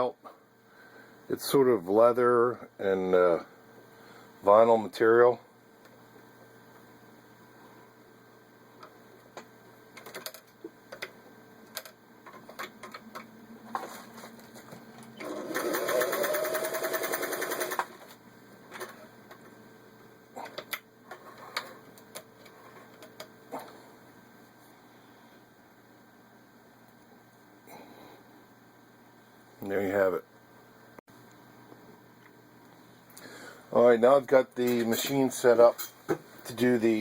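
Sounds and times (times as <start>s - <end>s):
sewing machine motor whine: 15.2s - 18.0s.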